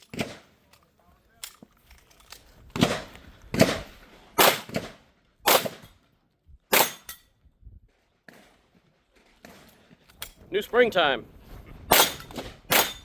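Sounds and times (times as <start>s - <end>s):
pistol shots with echo: 4.4s - 4.9s, 5.5s - 5.9s, 11.9s - 13.0s.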